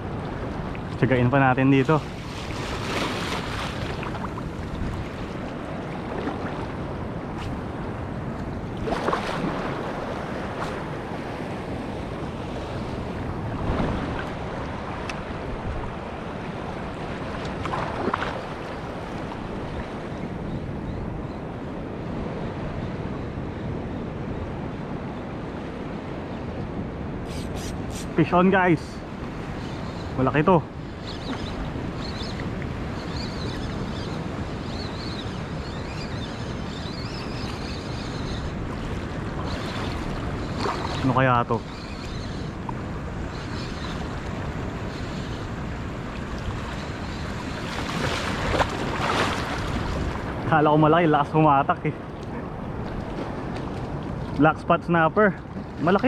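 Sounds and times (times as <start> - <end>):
sea surf washing in: 0.0 - 20.4, 42.5 - 56.0
wind buffeting microphone: 0.0 - 56.0.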